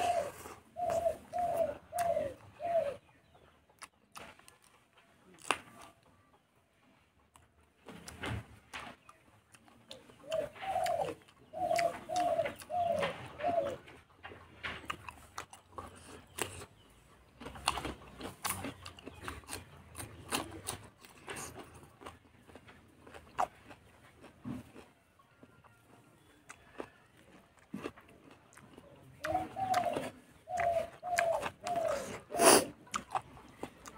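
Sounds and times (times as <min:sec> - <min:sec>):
person chewing wetly: 0:00.0 - 0:02.5, 0:03.8 - 0:06.0, 0:09.0 - 0:33.9
dove cooing: 0:00.0 - 0:03.5, 0:10.0 - 0:15.0, 0:29.2 - 0:32.8.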